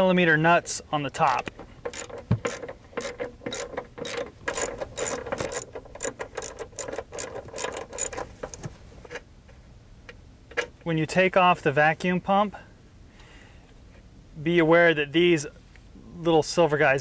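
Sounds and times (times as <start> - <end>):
socket ratchet clicking: 1.3 - 8.6.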